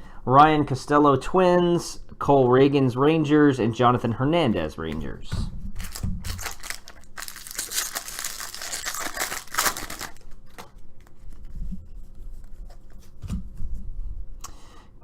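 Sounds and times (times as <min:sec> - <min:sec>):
foil wrapper tearing and crinkling: 0:05.8 - 0:10.7.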